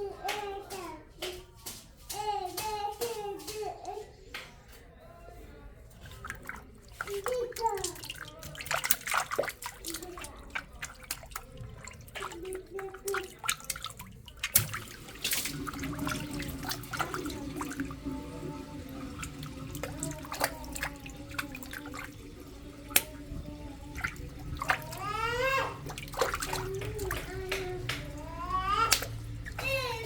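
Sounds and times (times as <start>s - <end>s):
water splashing and running: 5.9s - 30.0s
water balloons bursting: 7.2s - 30.0s.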